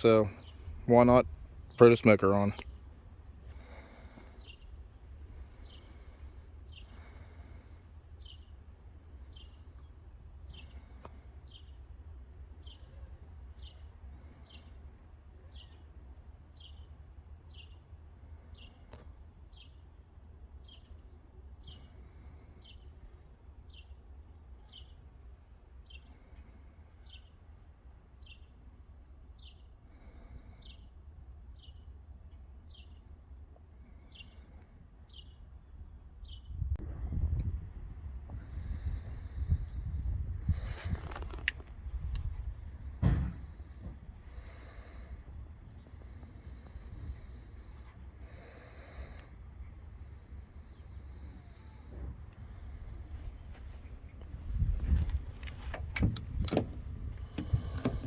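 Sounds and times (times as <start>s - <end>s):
bird chirping: 8.2s - 8.6s, 15.4s - 19.9s, 20.6s - 23.0s, 31.5s - 33.2s, 33.9s - 36.7s
low rumble: 36.6s - 48.3s.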